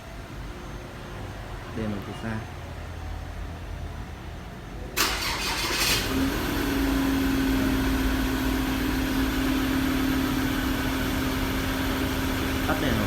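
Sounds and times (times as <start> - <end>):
engine starter cranking: 5.0 - 6.2
car engine idling: 5.0 - 13.0.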